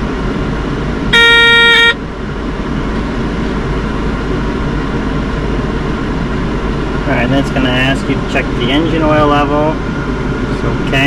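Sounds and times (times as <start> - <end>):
steady low rumble: 0.0 - 11.0
electronic warning buzzer beep: 1.1 - 2.0.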